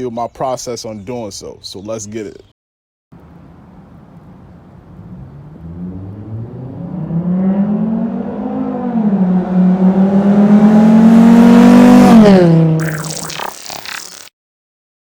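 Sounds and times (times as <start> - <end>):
car engine accelerating: 5.1 - 13.0.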